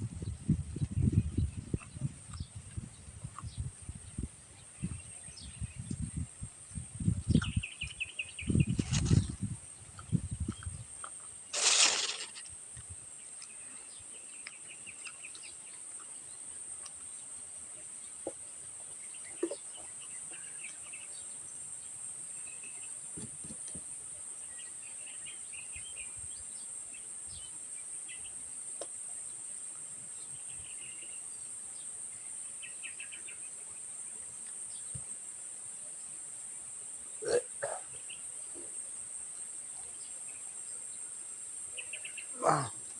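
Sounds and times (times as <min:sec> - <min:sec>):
crickets droning: 0:00.0 - 0:42.9
loud rustle: 0:08.7 - 0:09.4, 0:11.5 - 0:12.6.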